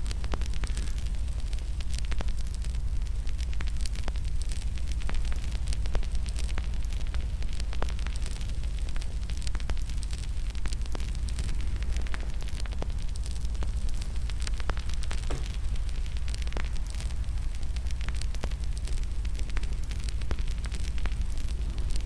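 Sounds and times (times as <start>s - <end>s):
wood fire crackling: 15.3s - 17.0s.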